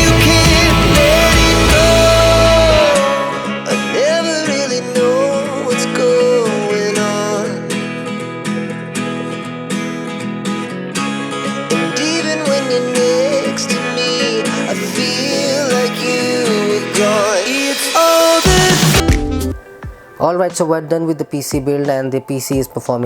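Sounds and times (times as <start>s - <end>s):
heavy bass: 0.0s - 3.4s, 18.0s - 19.6s
vocal melody: 0.0s - 7.7s, 11.7s - 19.7s
plucked acoustic guitar: 0.0s - 20.0s.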